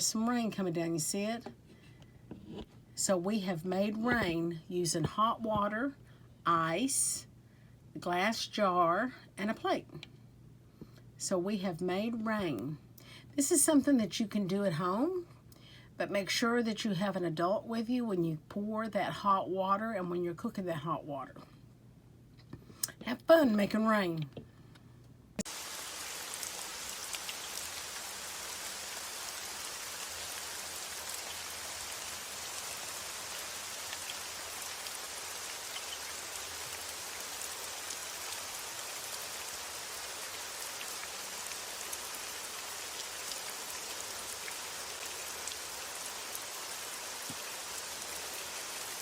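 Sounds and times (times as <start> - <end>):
steady rain falling: 25.4 - 49.0.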